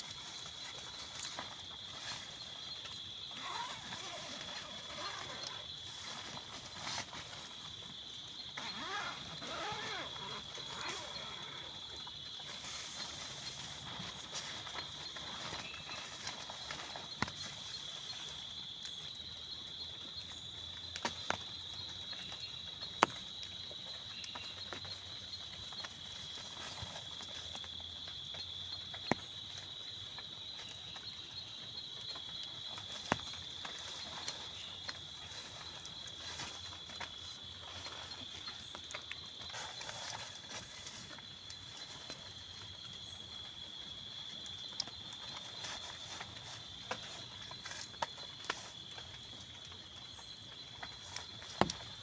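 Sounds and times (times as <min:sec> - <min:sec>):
high-pitched insect trill: 0:00.0 - 0:19.6.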